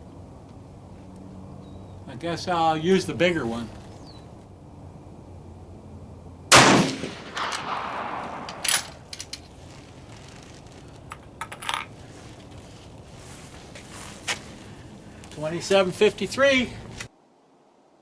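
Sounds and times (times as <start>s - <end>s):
rifle shot echoing: 6.5s - 9.4s.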